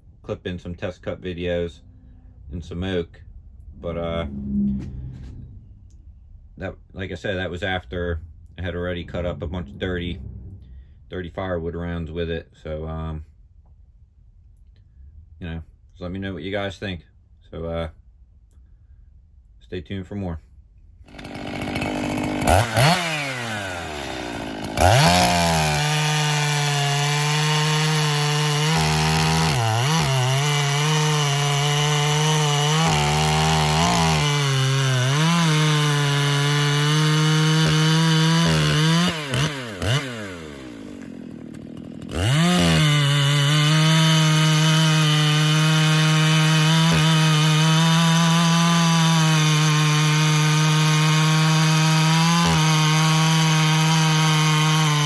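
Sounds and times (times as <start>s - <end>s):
chainsaw cutting wood: 21.1s - 55.0s.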